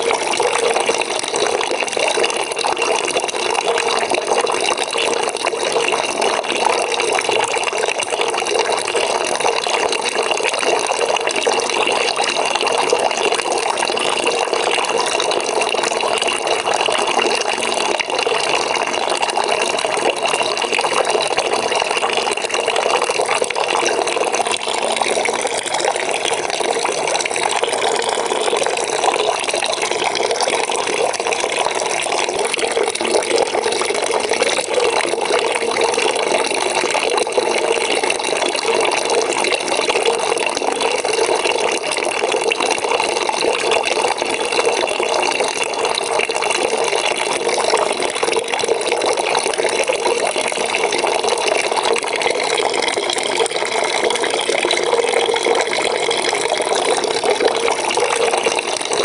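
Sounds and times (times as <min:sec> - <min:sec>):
water pouring into bucket: 0:00.0 - 0:59.0.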